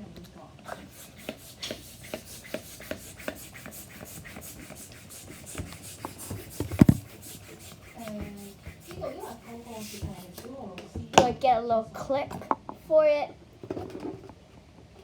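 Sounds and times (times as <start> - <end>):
hands rubbing paper and tape: 0.7 - 10.5
thump on work surface: 6.3 - 7.1.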